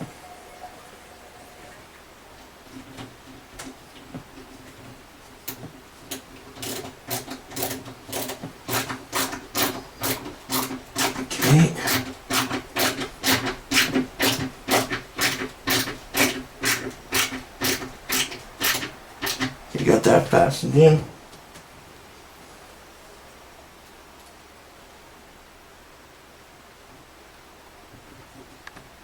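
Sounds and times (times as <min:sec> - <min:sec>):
screwdriver rasping into wood: 0:06.6 - 0:19.6.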